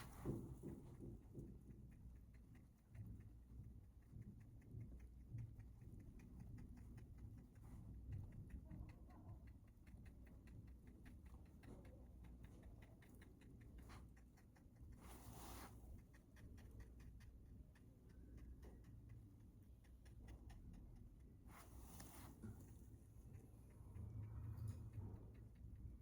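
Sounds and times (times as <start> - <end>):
low steady hum: 0.0 - 26.0
fast even ticking: 1.0 - 15.0, 22.9 - 26.0.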